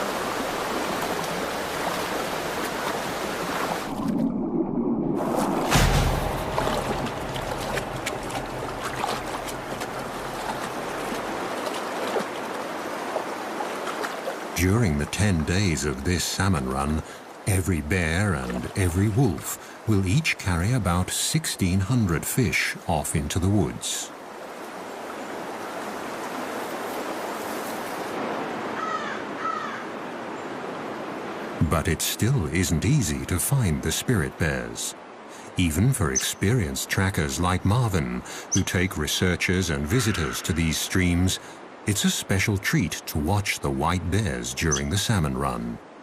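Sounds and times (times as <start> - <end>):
stream water rushing over rocks: 0.0 - 4.4, 5.2 - 28.5, 31.1 - 46.0
low rumble: 3.8 - 11.4.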